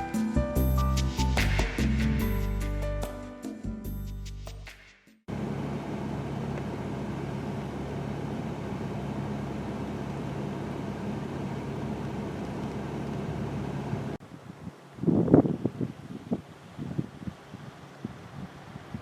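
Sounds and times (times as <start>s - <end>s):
background music: 0.0s - 5.0s
car engine humming: 5.3s - 14.2s
road noise: 5.3s - 19.0s.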